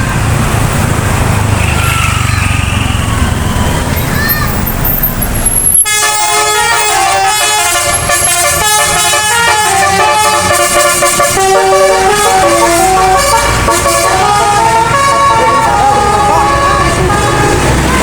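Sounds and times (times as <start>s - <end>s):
musical air horn tune: 5.8s - 18.0s.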